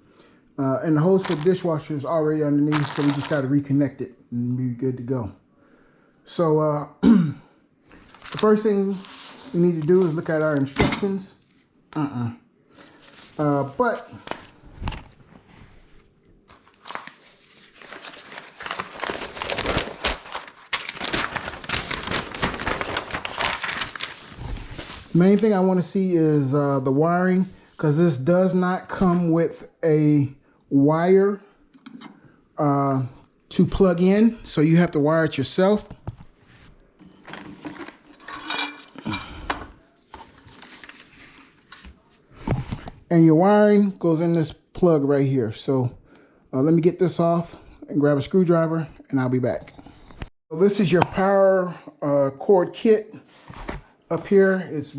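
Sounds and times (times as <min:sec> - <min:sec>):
paper rustling and crinkling: 0:01.0 - 0:01.8, 0:02.5 - 0:03.6, 0:08.0 - 0:10.8, 0:12.8 - 0:25.6, 0:35.7 - 0:38.3, 0:40.1 - 0:43.0, 0:53.3 - 0:54.6.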